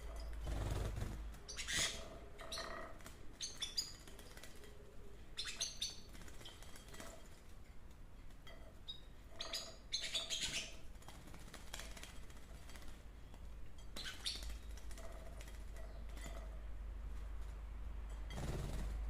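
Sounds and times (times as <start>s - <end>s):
canaries chirping: 0.0s - 7.1s, 8.8s - 10.9s, 12.8s - 16.6s.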